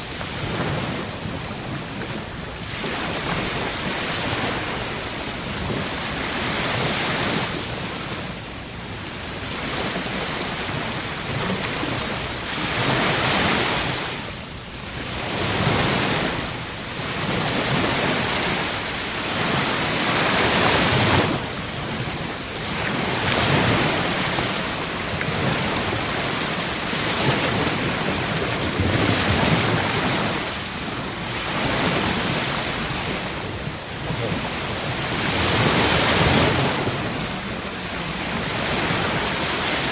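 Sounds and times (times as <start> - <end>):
sea waves breaking: 0.0 - 39.9.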